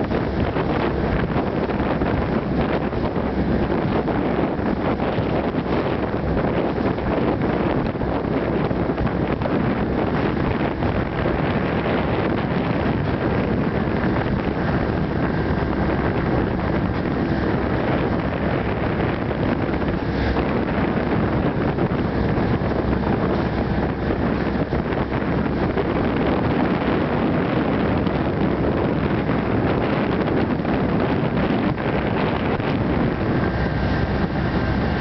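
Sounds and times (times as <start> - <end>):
motorboat rushing through water: 0.0 - 35.0
wind buffeting microphone: 0.0 - 35.0.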